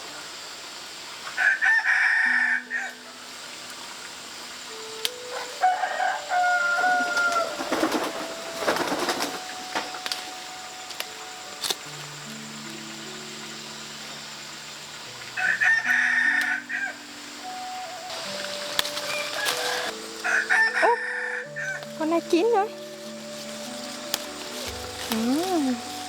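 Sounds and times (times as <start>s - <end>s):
rooster crowing: 1.4s - 3.2s, 5.2s - 10.8s, 15.4s - 22.0s
soft background music: 1.4s - 26.0s.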